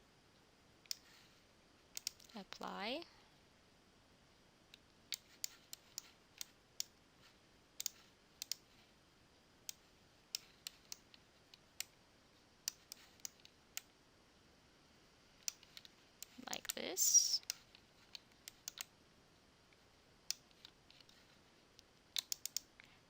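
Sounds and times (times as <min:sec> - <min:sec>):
faint background hiss: 0:00.0 - 0:23.0
computer mouse clicks: 0:00.8 - 0:01.1, 0:02.0 - 0:02.4, 0:04.7 - 0:07.0, 0:07.8 - 0:08.7, 0:09.6 - 0:12.0, 0:12.6 - 0:13.9, 0:15.4 - 0:18.9, 0:20.3 - 0:21.3, 0:22.1 - 0:22.8.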